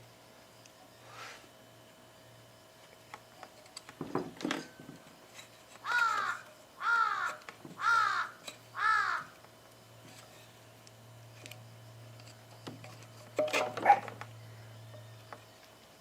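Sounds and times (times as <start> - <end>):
crow cawing: 5.8 - 9.4.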